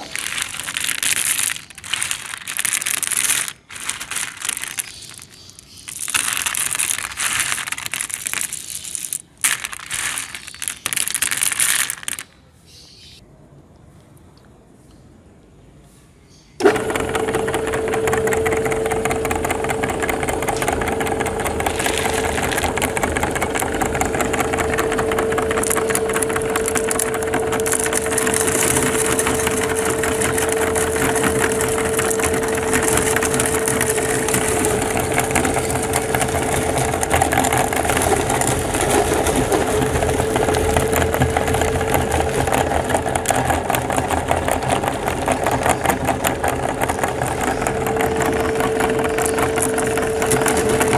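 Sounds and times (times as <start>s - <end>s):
hard candies crunching: 0.0s - 12.4s, 20.6s - 50.9s
meat grinder motor hum: 16.6s - 50.9s.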